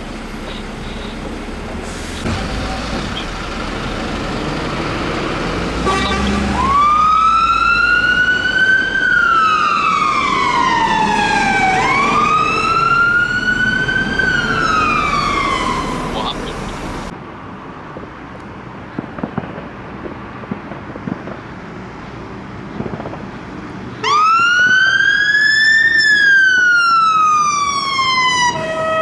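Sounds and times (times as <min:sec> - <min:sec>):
fire engine siren wailing: 0:00.0 - 0:17.1, 0:24.0 - 0:29.0
road noise: 0:00.0 - 0:29.0
truck engine rumble: 0:00.0 - 0:29.0.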